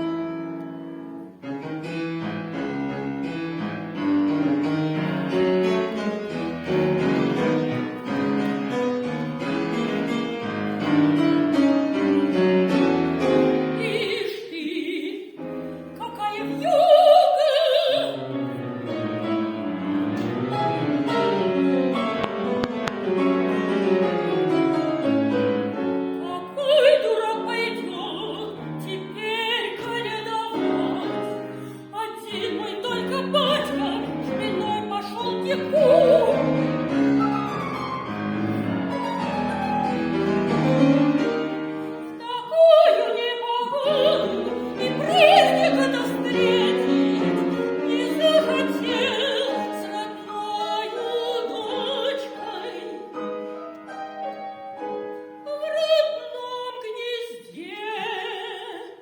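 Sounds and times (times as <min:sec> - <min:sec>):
piano accompaniment: 0:00.0 - 0:56.9
soprano singing opera: 0:11.8 - 0:18.7, 0:25.2 - 0:37.2, 0:41.2 - 0:53.5, 0:55.4 - 0:59.0.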